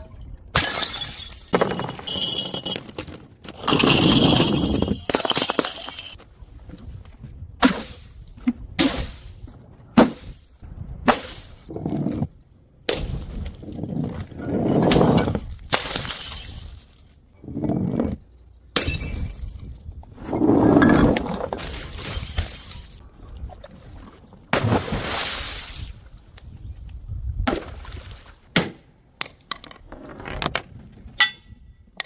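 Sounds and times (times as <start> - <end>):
broken glass scattering: 0.6 - 6.2, 15.3 - 17.1
glass bottles smashing: 0.6 - 6.2, 14.8 - 17.1, 18.8 - 19.8, 21.6 - 23.0.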